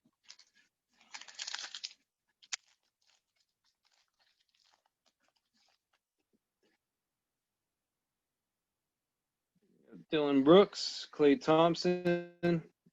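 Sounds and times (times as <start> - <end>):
foil wrapper crinkling: 0.1 - 6.0
wrapper snapping: 0.2 - 6.0.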